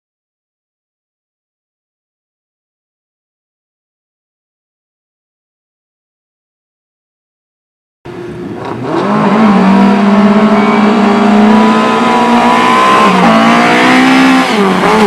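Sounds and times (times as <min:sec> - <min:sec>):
motorcycle engines revving: 0:08.1 - 0:15.0.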